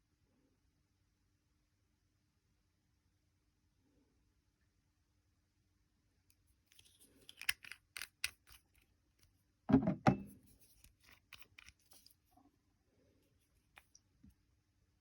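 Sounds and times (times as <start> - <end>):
small clicks and scratches: 6.3 - 9.4, 10.4 - 12.3, 13.4 - 14.4.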